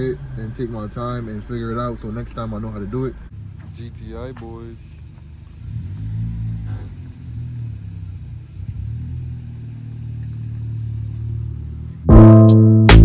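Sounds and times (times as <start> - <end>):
car engine running: 0.0 - 13.0.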